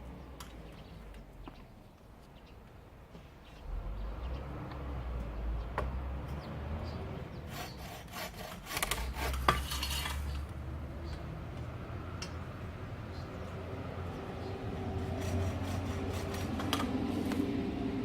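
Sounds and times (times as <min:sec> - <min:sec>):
handsaw rasping through wood: 0:07.5 - 0:10.3, 0:15.0 - 0:16.7.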